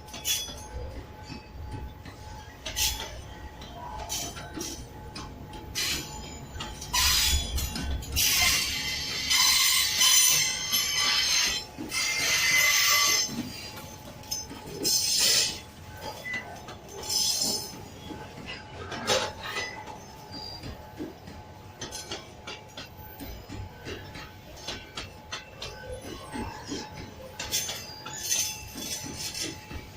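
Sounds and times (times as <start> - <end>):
railway cars rolling past: 0.0 - 29.9
metallic wheel screech: 6.9 - 16.4.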